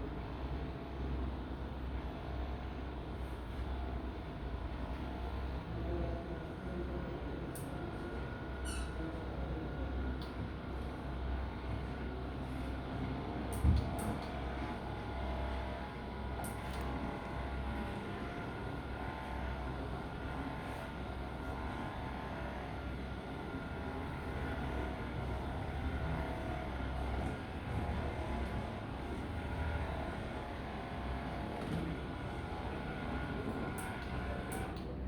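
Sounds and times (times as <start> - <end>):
massage device motor hum: 14.3 - 34.8.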